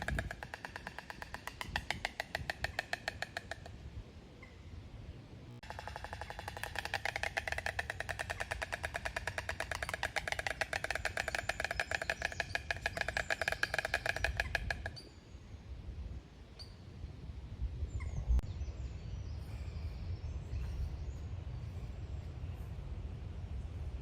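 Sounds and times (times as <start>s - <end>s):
stork clattering its bill: 0.0s - 3.8s, 5.6s - 15.0s.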